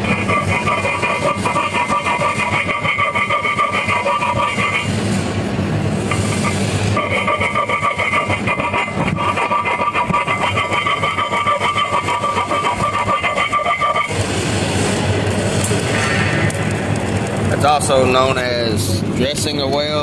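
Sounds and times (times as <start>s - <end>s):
rough grinding noise: 0.0s - 19.1s
angle grinder whining: 6.0s - 17.5s.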